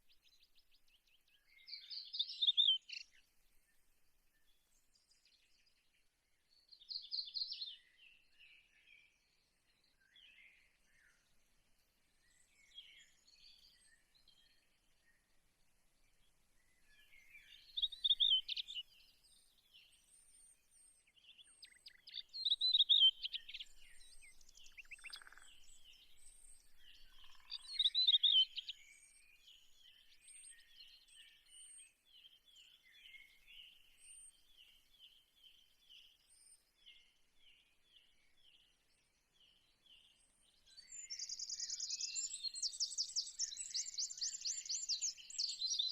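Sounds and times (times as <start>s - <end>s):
birds chirping and singing: 17.0s - 19.0s, 21.3s - 31.8s, 40.7s - 45.9s.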